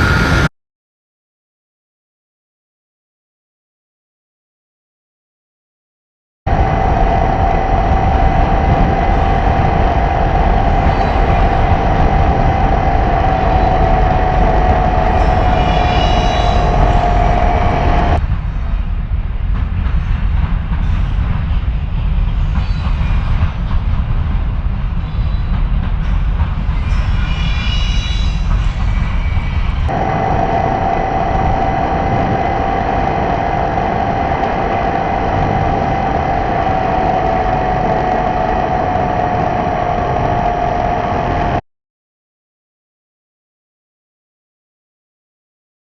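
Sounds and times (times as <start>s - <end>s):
wind on microphone: 0.0s - 0.5s, 6.5s - 41.6s.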